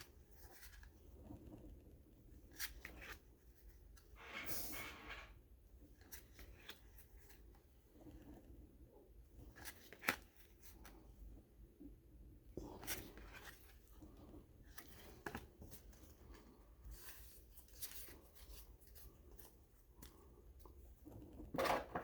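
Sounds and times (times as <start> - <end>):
cards rustling and clicking: 0.0 - 1.1, 2.5 - 4.1, 6.0 - 7.6, 9.4 - 11.0, 12.6 - 22.0.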